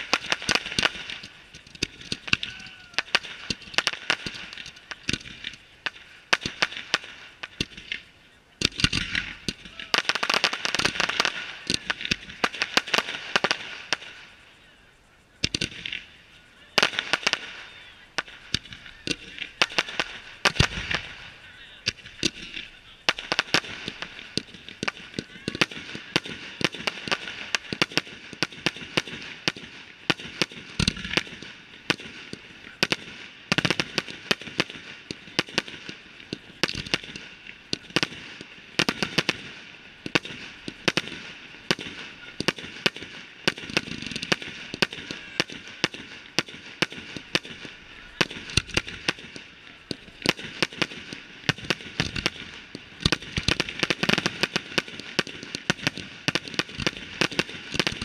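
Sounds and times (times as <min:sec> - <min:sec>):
deep firework booms: 0:00.0 - 0:14.4, 0:16.8 - 0:58.0
firework bangs and crackles: 0:00.0 - 0:58.0.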